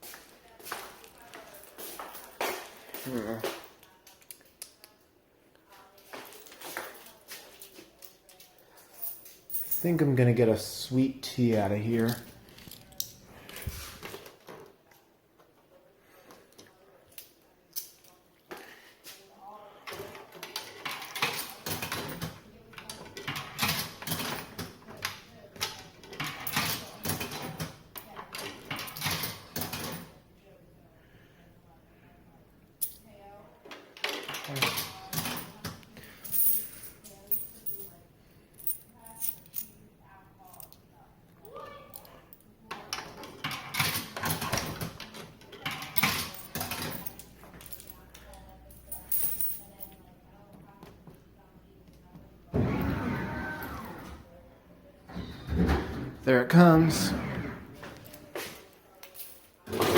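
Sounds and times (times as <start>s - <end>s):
vending machine clicks and rattles: 19.9s - 30.1s
coins clinking into vending machine: 20.4s - 30.2s, 34.1s - 38.0s, 42.9s - 50.0s.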